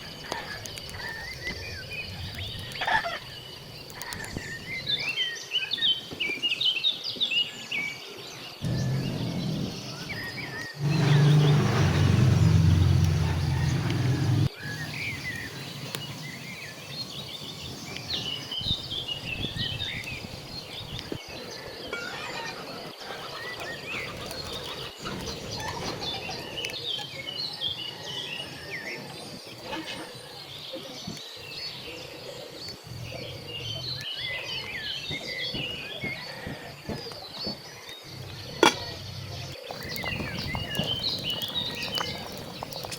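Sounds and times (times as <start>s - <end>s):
small birds chirping: 0.0s - 42.9s
loud low rumbling: 8.6s - 10.2s, 10.8s - 14.5s.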